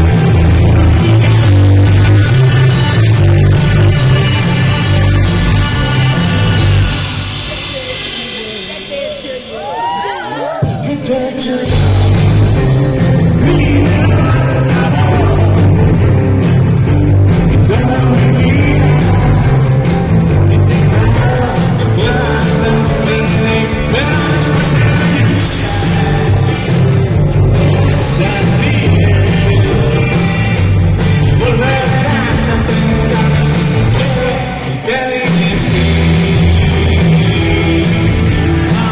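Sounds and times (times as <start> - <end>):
live rock band playing: 0.0 - 10.1, 10.8 - 38.9
lead vocal singing: 9.2 - 38.9.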